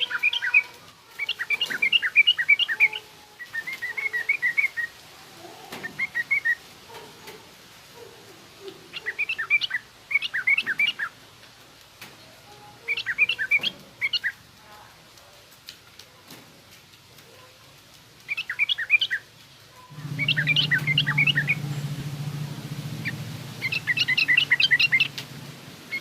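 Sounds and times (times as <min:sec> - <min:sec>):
bird singing chattering phrases: 0:00.0 - 0:05.0, 0:05.7 - 0:07.4, 0:08.6 - 0:11.2, 0:12.3 - 0:14.5, 0:18.2 - 0:22.2, 0:23.0 - 0:25.2.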